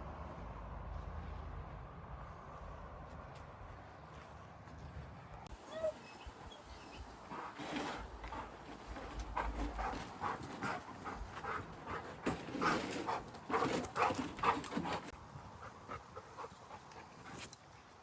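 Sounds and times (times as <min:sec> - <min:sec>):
dog panting: 0:05.8 - 0:17.4.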